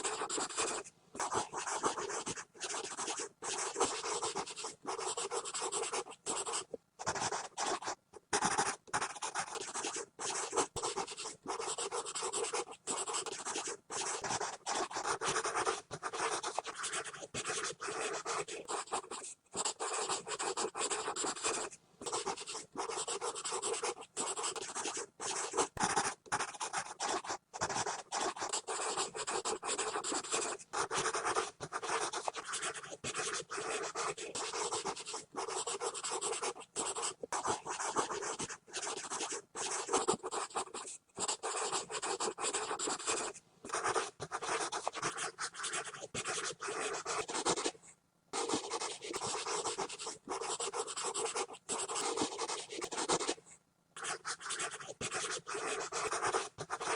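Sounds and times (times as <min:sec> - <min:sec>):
pencil scribbling on paper: 0:00.0 - 0:47.8, 0:48.4 - 0:53.4, 0:54.0 - 0:56.9.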